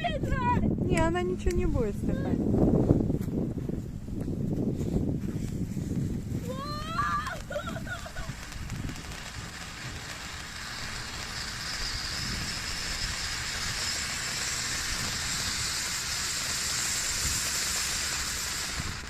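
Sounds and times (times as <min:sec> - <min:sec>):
fountain firework hissing: 0:06.1 - 0:19.0.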